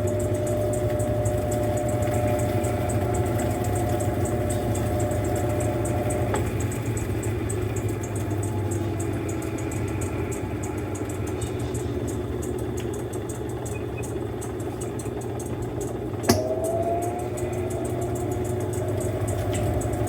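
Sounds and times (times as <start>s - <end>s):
light rhythmic ticking: 0.0s - 20.0s
motor whine rising: 0.0s - 20.0s
washing machine motor hum: 0.0s - 20.0s
sharp click: 12.8s - 16.8s.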